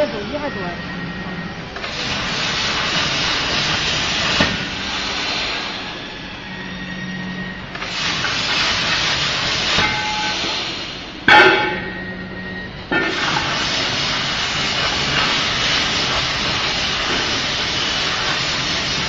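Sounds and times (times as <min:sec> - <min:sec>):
plasma cutter torch hissing: 0:01.8 - 0:06.1, 0:07.7 - 0:11.2, 0:12.9 - 0:19.0.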